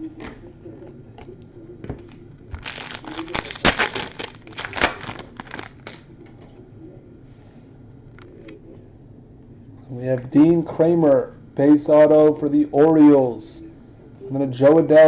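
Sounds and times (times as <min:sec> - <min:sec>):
card pack wrapping crinkling and tearing: 0:02.5 - 0:06.1.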